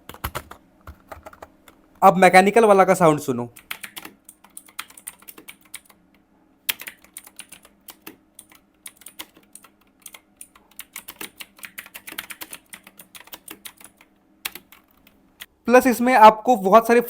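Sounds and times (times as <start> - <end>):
mechanical keyboard typing: 0.0 - 1.5, 3.6 - 6.0, 6.7 - 15.2.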